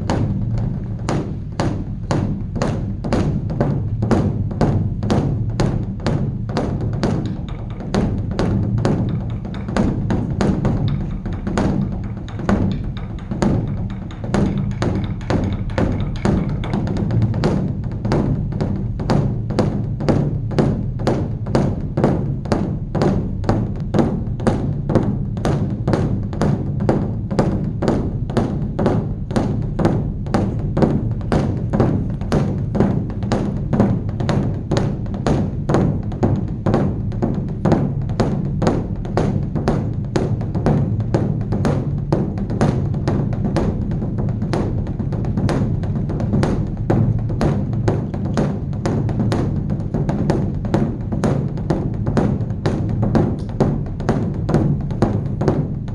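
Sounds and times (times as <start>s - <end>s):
low drumhead boom: 0.0s - 55.9s
temple drum beaten rapidly: 0.0s - 55.9s.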